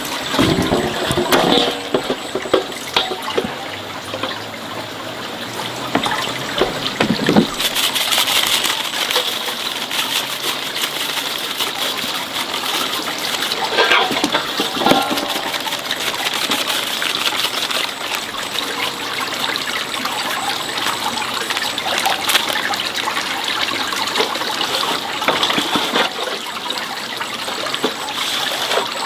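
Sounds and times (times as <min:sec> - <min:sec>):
knocks of objects in water: 0:00.0 - 0:04.8, 0:05.7 - 0:08.3, 0:13.1 - 0:19.0
water running and splashing: 0:00.0 - 0:29.0.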